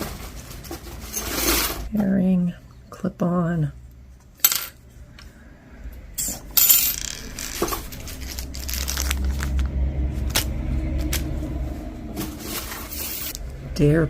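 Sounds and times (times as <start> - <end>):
metal jewelry clinking: 4.4 - 4.8, 6.2 - 9.6
low rumble: 5.6 - 14.0.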